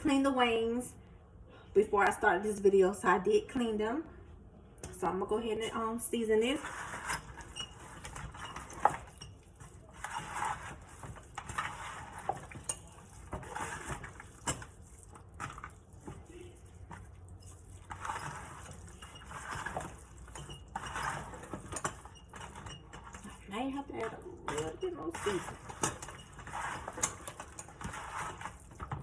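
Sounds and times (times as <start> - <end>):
hands squishing raw chicken: 9.0 - 22.5.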